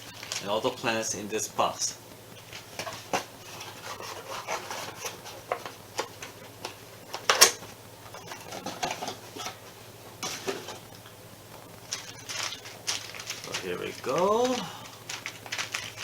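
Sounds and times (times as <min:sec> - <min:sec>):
plastic bags rustling: 0:00.0 - 0:11.2, 0:11.8 - 0:16.0
plastic bricks clicking: 0:11.9 - 0:16.0.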